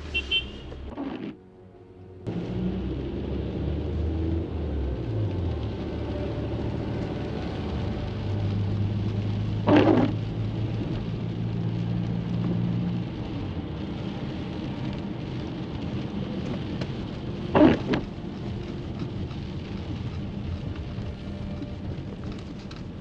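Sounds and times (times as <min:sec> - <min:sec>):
low vehicle hum: 0:00.0 - 0:23.0
rain hiss: 0:02.3 - 0:23.0.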